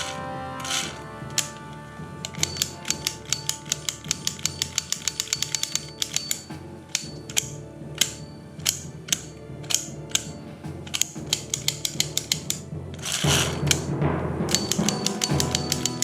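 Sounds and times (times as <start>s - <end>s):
background music: 0.0s - 16.0s
plastic toy guns clicking: 2.4s - 10.3s, 10.9s - 13.8s.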